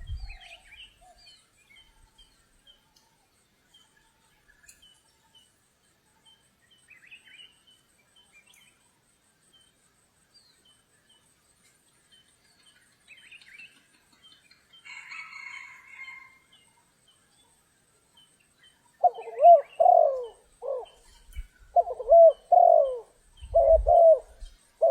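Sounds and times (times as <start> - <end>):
faint bird chirps: 0.0 - 9.8, 10.4 - 24.9.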